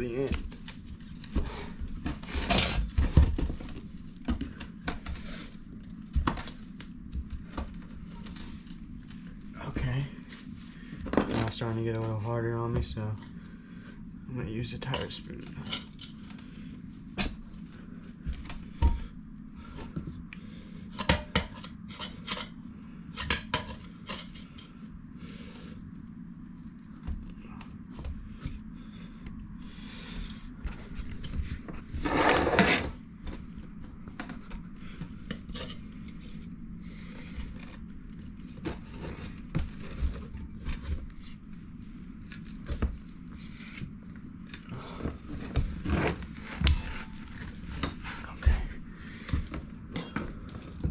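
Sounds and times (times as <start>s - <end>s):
tire spoons scraping metal rim: 31.9s - 33.0s.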